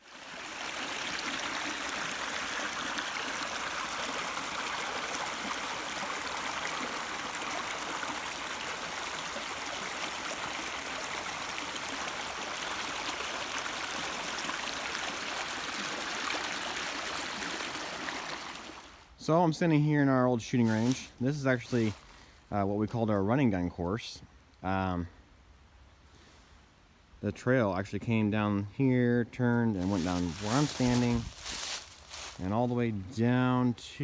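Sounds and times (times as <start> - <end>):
creek water flowing: 0.0 - 19.2, 20.5 - 22.4, 29.8 - 33.3.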